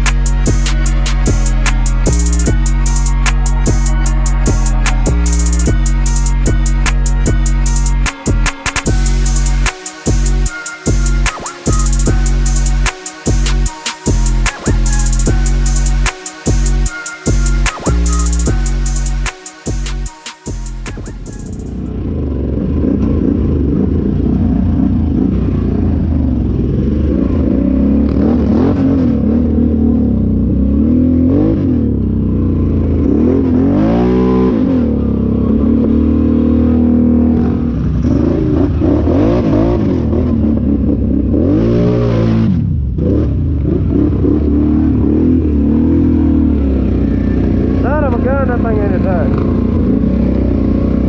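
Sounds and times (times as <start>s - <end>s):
off-road vehicle engine revving: 20.8s - 51.0s.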